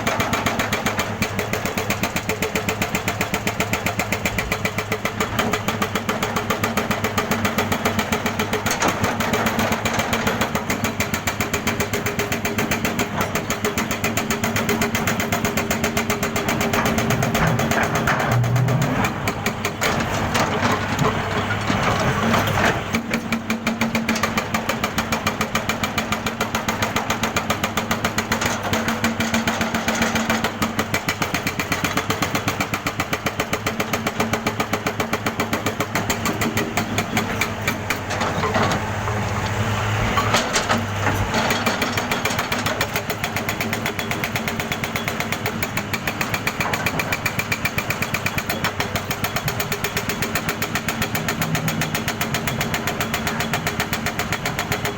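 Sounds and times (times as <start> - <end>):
jackhammer pounding: 0.0 - 54.9
engine drone: 16.6 - 23.0.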